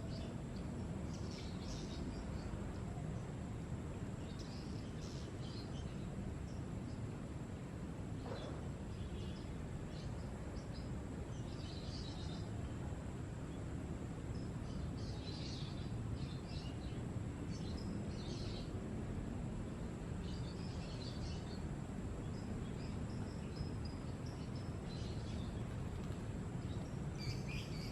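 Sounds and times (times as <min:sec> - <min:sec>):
wild birds chirping: 0:00.0 - 0:03.4, 0:04.2 - 0:12.9, 0:13.5 - 0:18.8, 0:19.6 - 0:27.9
low outdoor rumble: 0:00.0 - 0:27.9
high insect whine: 0:14.1 - 0:27.9.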